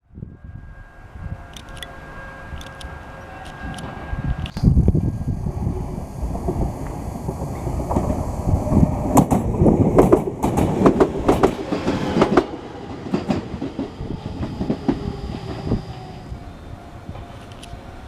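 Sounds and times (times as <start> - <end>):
train running rumble: 0.4 - 18.0
train wheels clacking on rail joints: 7.3 - 16.2.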